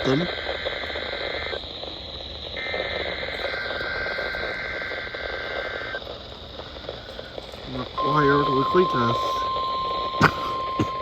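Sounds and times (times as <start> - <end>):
radio static: 0.0 - 11.0
two-tone digital data signal: 7.7 - 11.0.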